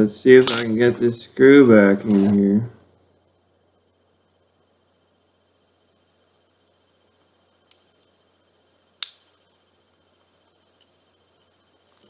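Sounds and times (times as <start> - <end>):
sharp clicks of small parts: 7.6 - 8.2, 9.0 - 9.4.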